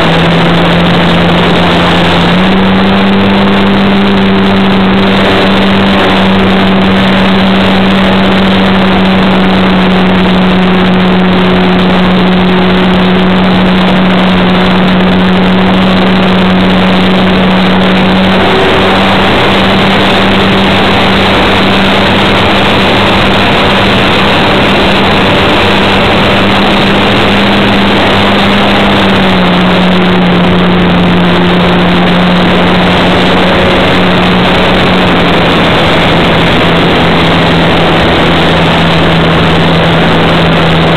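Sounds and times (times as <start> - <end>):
wind rush: 0.0 - 40.9.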